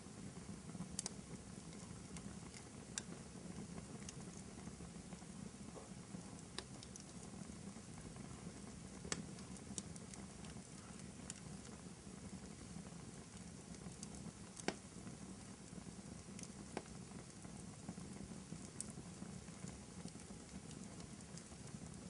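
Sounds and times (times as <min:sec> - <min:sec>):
fire crackling: 0:00.0 - 0:22.0
fire popping and snapping: 0:00.0 - 0:22.0.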